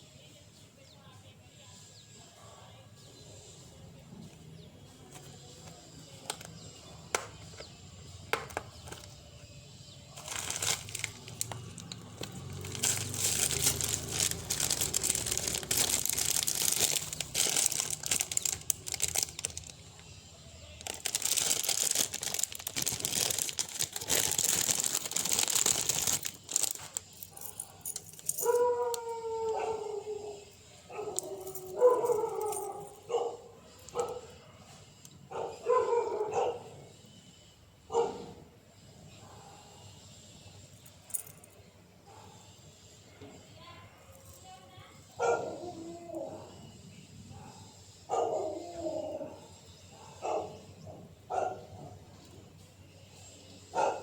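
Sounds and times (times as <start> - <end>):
plastic packaging crinkling and tearing: 10.2 - 19.8, 20.8 - 28.5
dog barking: 28.4 - 34.7, 35.3 - 36.8, 37.9 - 38.5, 45.1 - 45.6, 47.3 - 48.6, 49.9 - 52.0, 53.7 - 54.0.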